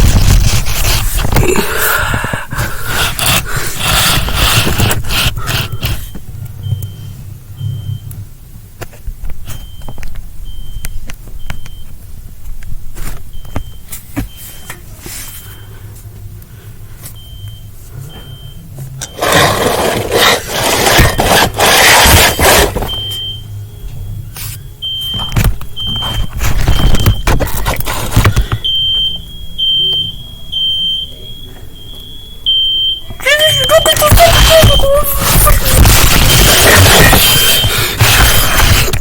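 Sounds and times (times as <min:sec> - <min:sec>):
loud scraping noise: 0:00.0 - 0:06.1, 0:19.1 - 0:23.0, 0:26.4 - 0:28.4, 0:34.0 - 0:39.0
smoke alarm beeping: 0:02.5 - 0:08.2, 0:09.4 - 0:12.0, 0:17.2 - 0:39.0.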